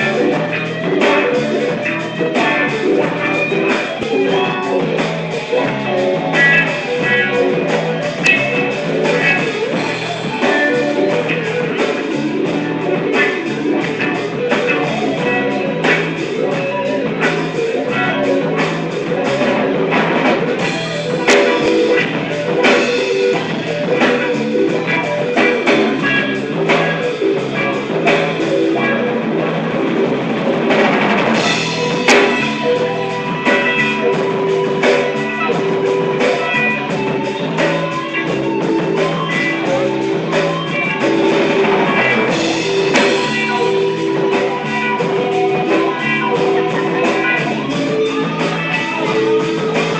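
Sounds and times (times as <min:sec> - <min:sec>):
rock music with guitar and drums: 0:00.0 - 0:49.9.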